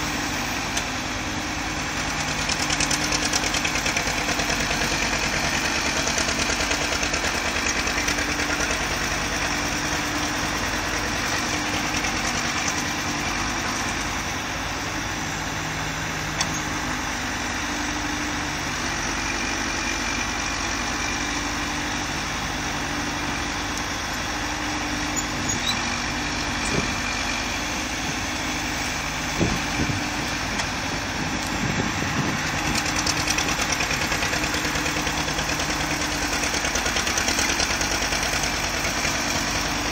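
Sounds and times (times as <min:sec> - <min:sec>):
diesel engine idling: 0:00.0 - 0:39.9.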